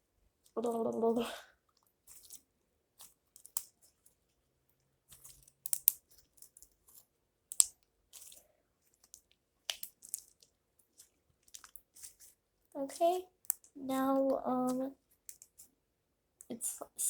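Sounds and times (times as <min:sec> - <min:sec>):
slime squeezed with wet crackles: 0:05.1 - 0:13.8.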